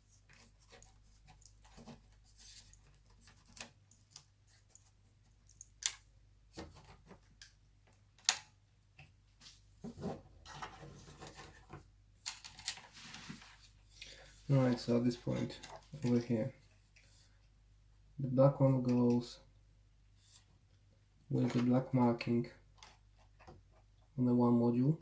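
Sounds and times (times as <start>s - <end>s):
hands handling small parts: 10.5s - 13.7s.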